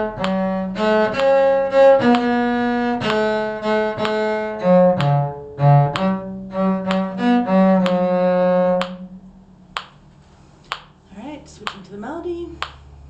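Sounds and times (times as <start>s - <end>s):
bowed string instruments: 0.0s - 9.9s.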